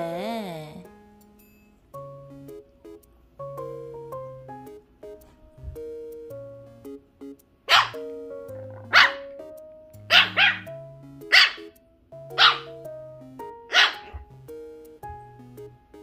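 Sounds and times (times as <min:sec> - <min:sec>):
light background music: 0:00.0 - 0:16.0
small dog barking sharply: 0:07.7 - 0:08.0, 0:08.9 - 0:09.3, 0:10.1 - 0:10.7, 0:11.3 - 0:11.7, 0:12.4 - 0:12.7, 0:13.7 - 0:14.2.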